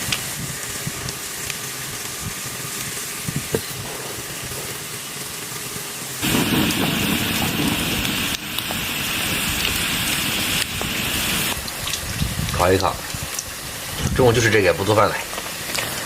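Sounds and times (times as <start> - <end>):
bamboo hissing and sizzling: 0.0 - 16.0
fire crackles: 0.0 - 16.0
loud rushing noise: 6.2 - 11.6.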